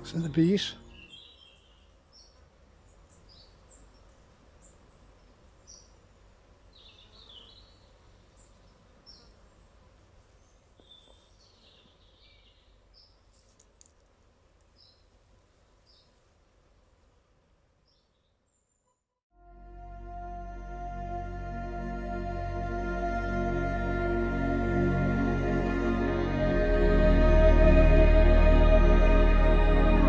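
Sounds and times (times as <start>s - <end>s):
small birds chirping: 0.0s - 14.0s, 14.6s - 15.2s, 15.8s - 16.2s
low steady rumble: 19.4s - 30.0s.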